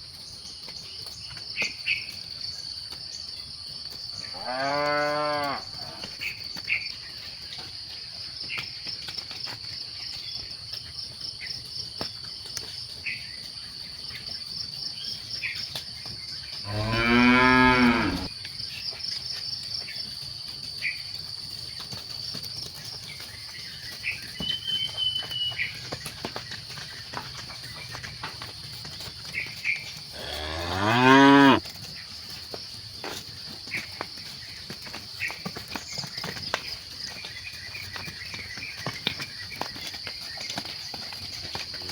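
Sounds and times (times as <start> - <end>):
cattle mooing: 4.4 - 6.1, 16.7 - 18.3, 30.2 - 31.6.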